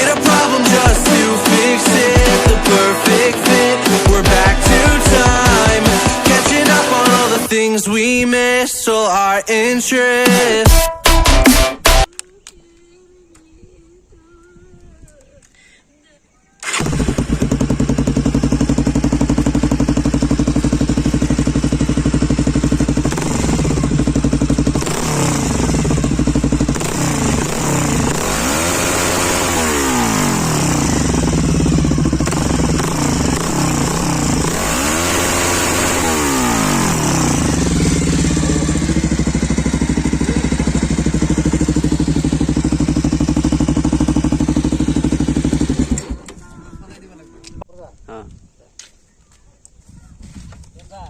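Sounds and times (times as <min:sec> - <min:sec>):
motorcycle engine idling and revving: 0:00.0 - 0:07.7, 0:16.6 - 0:47.7.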